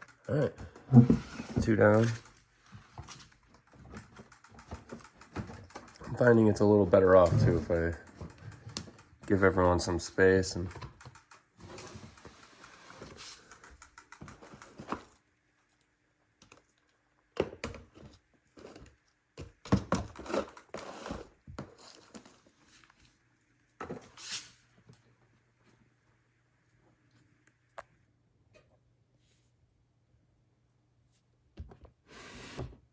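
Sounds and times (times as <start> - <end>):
handling clicks and knocks: 3.0 - 12.4.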